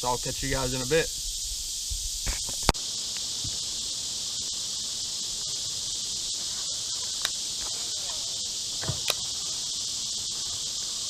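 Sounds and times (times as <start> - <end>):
insects chirping: 0.0 - 11.0
sharp click: 8.8 - 9.2.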